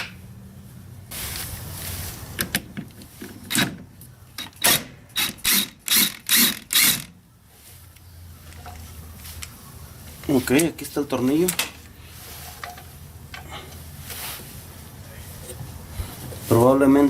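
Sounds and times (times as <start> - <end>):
ratchet wrench strokes: 4.4 - 7.1.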